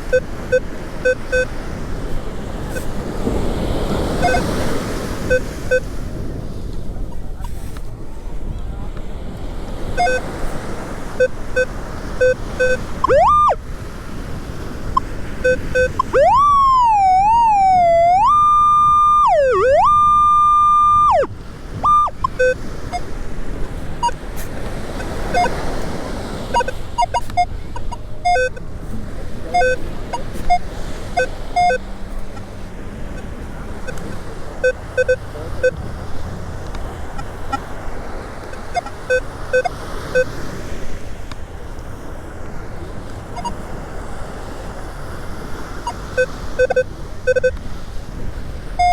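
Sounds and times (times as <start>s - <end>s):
metal detector beeps: 0.0s - 1.6s, 2.7s - 2.9s, 4.1s - 5.9s, 10.0s - 10.4s, 11.2s - 13.6s, 14.9s - 23.1s, 24.0s - 24.2s, 24.9s - 25.8s, 26.5s - 28.6s, 29.5s - 32.5s, 33.1s - 35.8s, 38.5s - 40.4s, 43.4s - 43.6s, 45.8s - 47.6s
surf: 0.0s - 48.9s
wind: 0.0s - 48.9s
wavering metal detector tone: 4.2s - 4.5s, 10.0s - 10.3s, 11.2s - 13.6s, 15.4s - 23.1s, 25.0s - 25.6s, 26.5s - 28.6s, 29.5s - 32.5s, 33.1s - 35.8s, 38.5s - 40.3s.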